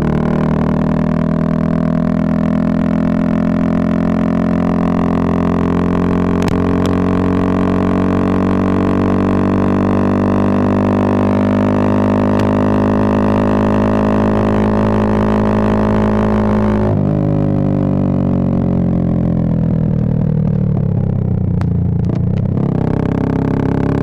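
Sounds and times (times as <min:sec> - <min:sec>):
motorcycle engine droning: 0:00.0 - 0:24.0.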